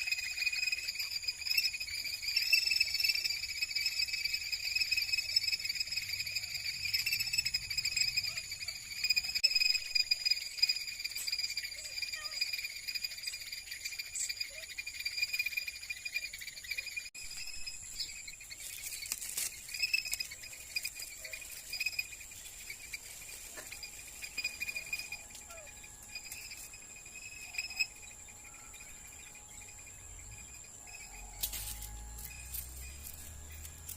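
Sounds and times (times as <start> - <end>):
insects chirping: 0.0 - 33.9.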